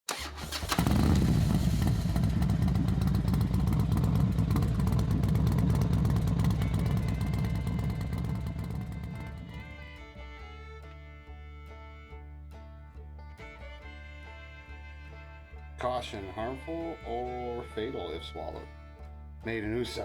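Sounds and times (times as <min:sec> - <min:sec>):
motorcycle engine running: 0:00.4 - 0:10.1.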